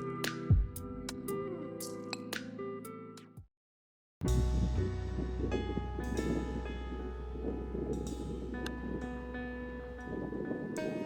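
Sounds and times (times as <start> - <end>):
background music sustained notes: 4.2 - 11.0.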